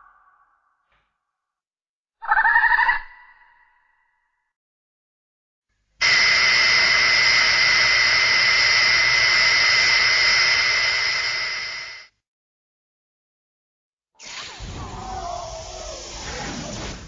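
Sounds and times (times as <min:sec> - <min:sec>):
hiss with high whistling tone: 0:06.0 - 0:12.1, 0:14.2 - 0:17.0.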